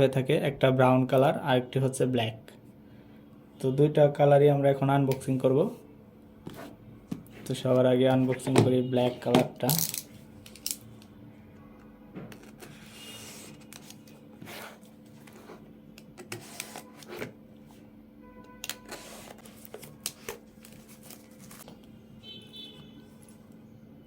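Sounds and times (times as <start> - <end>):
packaging rustling and sliding: 18.8 - 21.8.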